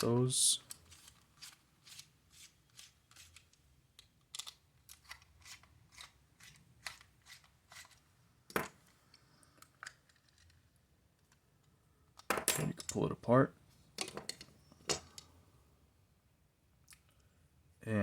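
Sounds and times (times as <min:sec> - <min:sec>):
screwdriver clicks and scrapes: 0:00.7 - 0:08.0.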